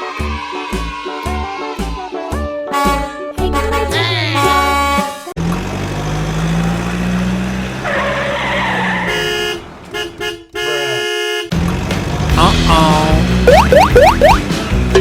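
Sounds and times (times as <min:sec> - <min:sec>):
tyres skidding: 0:05.4 - 0:10.5, 0:11.5 - 0:14.7
car horn tooting: 0:09.0 - 0:11.5.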